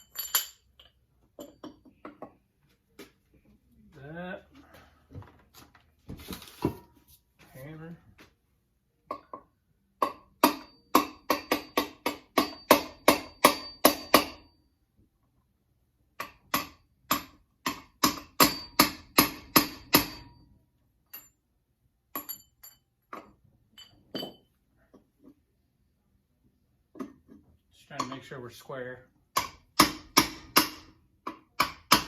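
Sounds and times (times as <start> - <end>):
hammer striking metal: 10.0 - 14.5, 16.2 - 20.4, 29.3 - 32.0.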